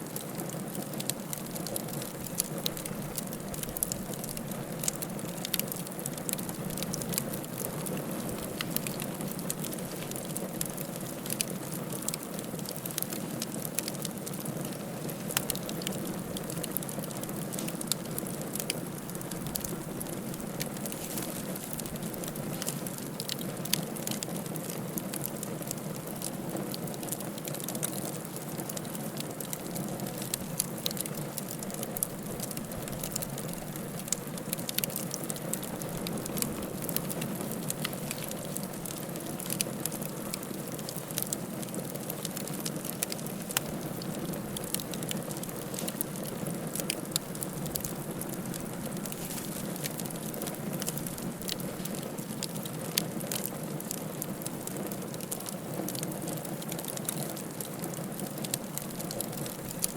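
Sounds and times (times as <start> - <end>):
wood fire crackling: 0.0 - 59.9.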